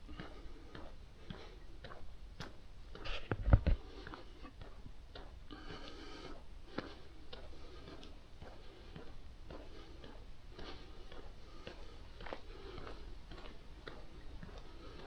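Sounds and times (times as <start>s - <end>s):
footsteps walking: 0.1s - 15.0s
low rumble on microphone: 2.4s - 5.0s.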